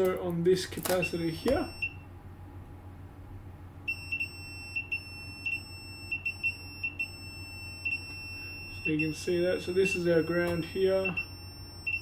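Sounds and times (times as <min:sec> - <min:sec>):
faint low hum: 0:00.0 - 0:12.0
multimeter continuity beeps: 0:00.8 - 0:02.1, 0:03.8 - 0:12.0.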